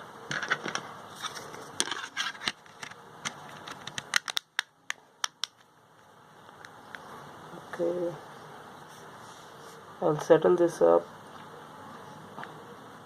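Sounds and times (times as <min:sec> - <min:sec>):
plastic clicks: 0:01.8 - 0:05.7.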